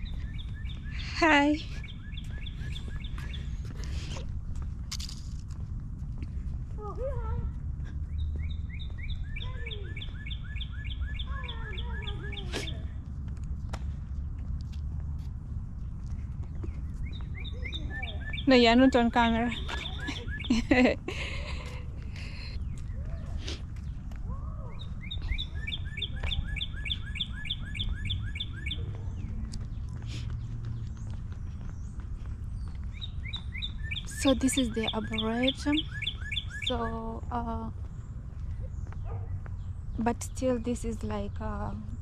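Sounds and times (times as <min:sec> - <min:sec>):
low outdoor rumble: 0:00.0 - 0:35.9
small bird chirping rapidly: 0:08.1 - 0:13.0, 0:16.5 - 0:20.8, 0:24.6 - 0:29.0, 0:32.6 - 0:40.0
songbird repeating notes: 0:17.0 - 0:20.8, 0:32.9 - 0:37.7.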